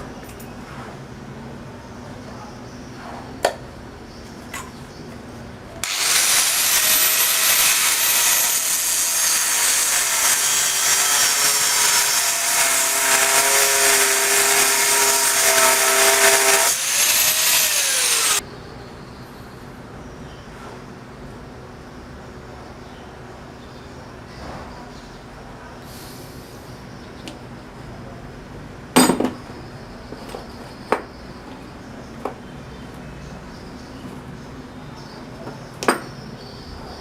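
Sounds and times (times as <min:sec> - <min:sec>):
power tool grinding metal: 0:05.8 - 0:18.4.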